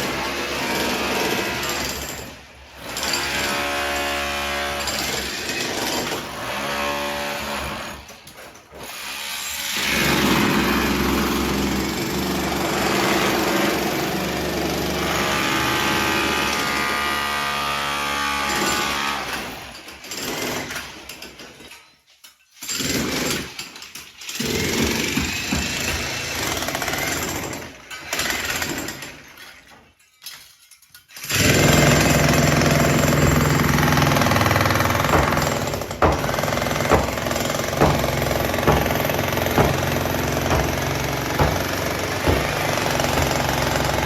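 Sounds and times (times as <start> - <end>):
breaker hammer on masonry: 24.4 - 29.3, 31.2 - 44.0.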